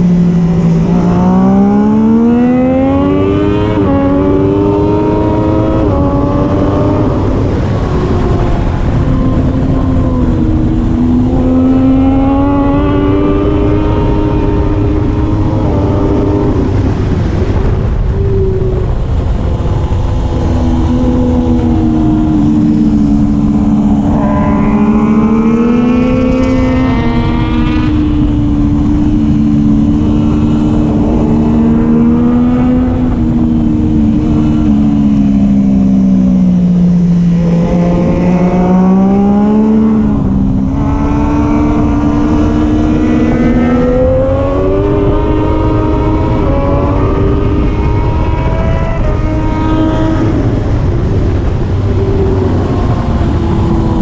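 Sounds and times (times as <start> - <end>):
motorcycle engine revving: 0.0 - 54.0
wind noise: 0.0 - 54.0.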